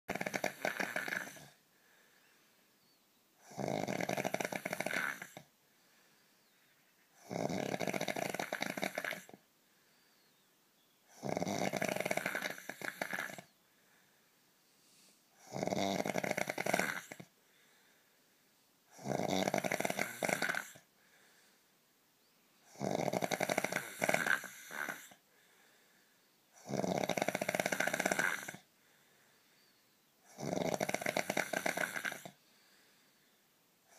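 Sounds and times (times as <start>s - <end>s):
man snoring: 0.1s - 1.6s, 3.4s - 5.5s, 7.2s - 9.4s, 11.1s - 13.5s, 15.4s - 17.3s, 18.9s - 20.8s, 22.7s - 25.2s, 26.6s - 28.7s, 30.3s - 32.4s
quiet breathing: 0.4s - 3.5s, 4.3s - 7.3s, 8.0s - 11.2s, 11.9s - 15.5s, 16.1s - 22.7s, 23.3s - 26.7s, 27.3s - 33.9s.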